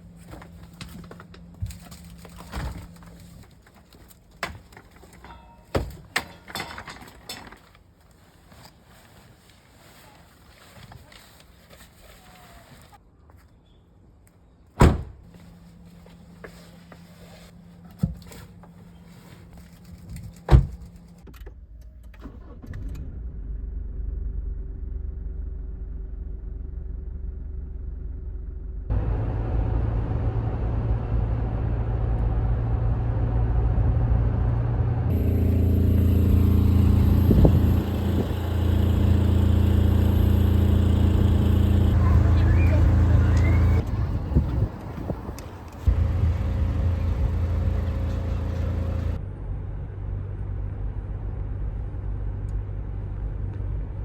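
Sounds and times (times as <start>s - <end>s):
car engine running: 24.5s - 49.2s.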